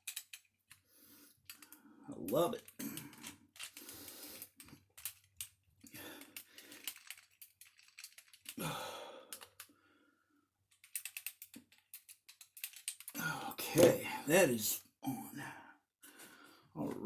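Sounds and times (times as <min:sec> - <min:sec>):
plastic parts clicking and clattering: 0:00.0 - 0:08.6, 0:09.3 - 0:09.7, 0:10.7 - 0:14.0.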